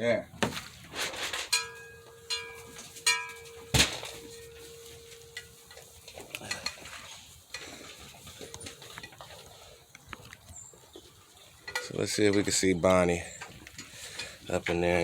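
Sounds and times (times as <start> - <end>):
metal pan clanking and ringing: 1.4 - 5.8.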